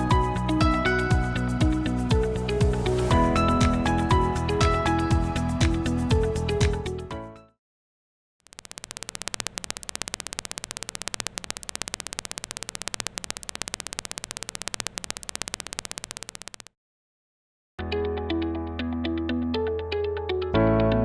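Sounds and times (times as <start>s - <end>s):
alarm fast electronic clicking: 8.4s - 16.7s.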